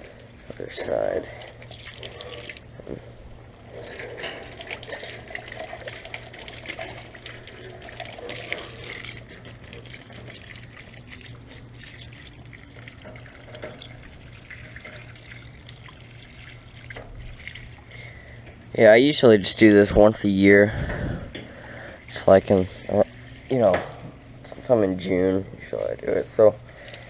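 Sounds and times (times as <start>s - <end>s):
hose water spraying on metal unit: 0.6s - 17.8s.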